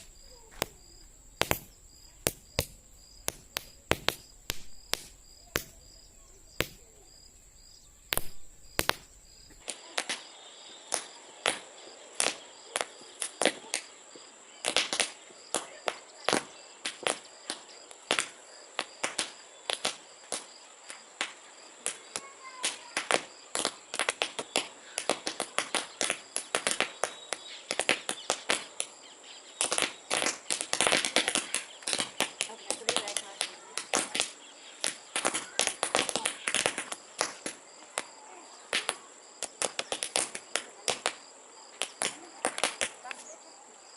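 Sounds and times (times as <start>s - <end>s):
paper caps popping: 0.0s - 9.6s.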